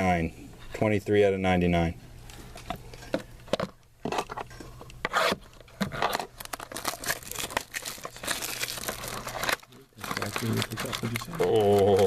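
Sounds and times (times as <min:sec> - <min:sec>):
packaging crinkling and tearing: 0:05.4 - 0:12.0.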